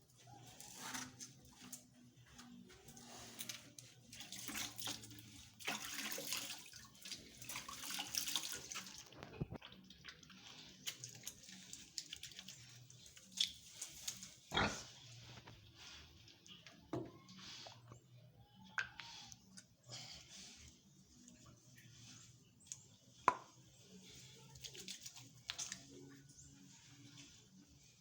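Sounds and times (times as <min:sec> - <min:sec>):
pig grunting: 0:14.5 - 0:15.0.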